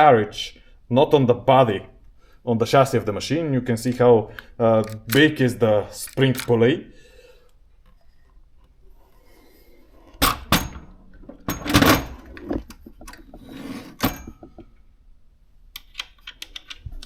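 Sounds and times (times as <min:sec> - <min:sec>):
small metal clicks: 0:04.8 - 0:05.4, 0:06.0 - 0:06.6, 0:15.7 - 0:17.0.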